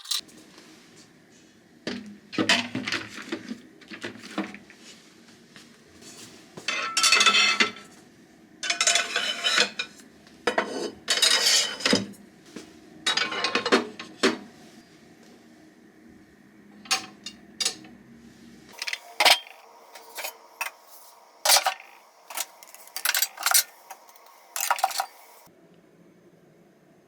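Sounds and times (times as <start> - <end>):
dishes and cutlery clinking: 6.7 - 7.9, 8.6 - 12.1, 13.1 - 14.1, 18.7 - 20.8, 21.4 - 25.5.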